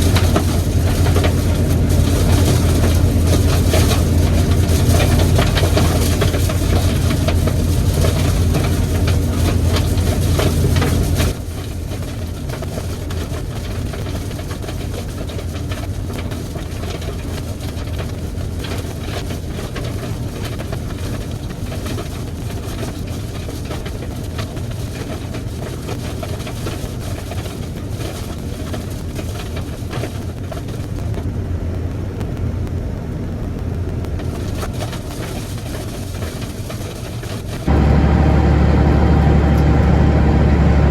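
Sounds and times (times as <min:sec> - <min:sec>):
combine harvester droning: 0:00.0 - 0:14.1, 0:37.2 - 0:40.9.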